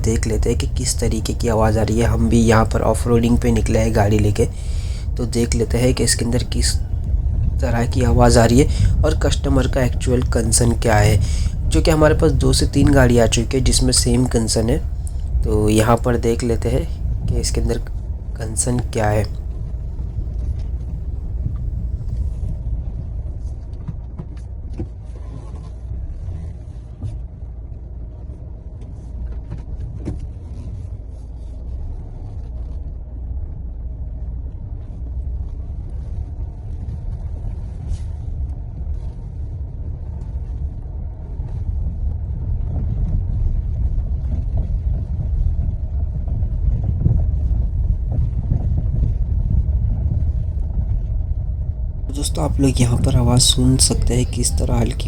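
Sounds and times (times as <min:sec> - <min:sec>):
vehicle rumbling over rough ground: 0:00.0 - 0:23.2.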